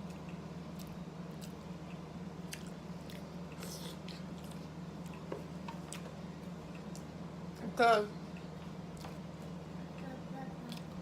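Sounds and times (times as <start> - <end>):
person chewing food: 0.0 - 7.2
steady low hum: 0.0 - 11.0.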